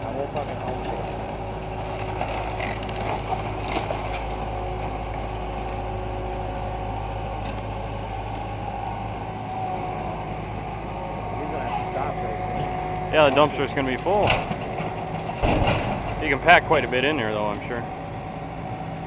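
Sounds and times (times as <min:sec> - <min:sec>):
diesel engine running: 0:00.0 - 0:19.0
sharp knocks and cracks: 0:14.2 - 0:16.3.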